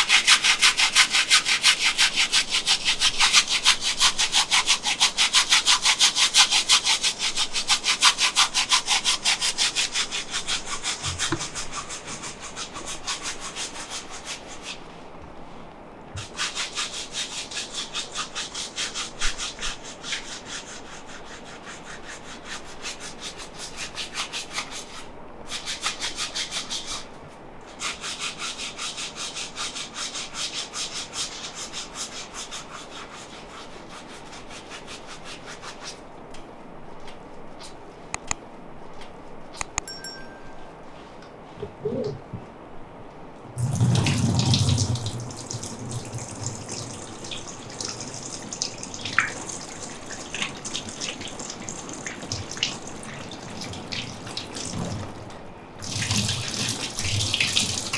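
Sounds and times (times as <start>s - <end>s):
hands rubbing briskly on body: 0.0s - 15.0s, 27.8s - 36.2s, 37.0s - 38.1s, 43.6s - 55.2s.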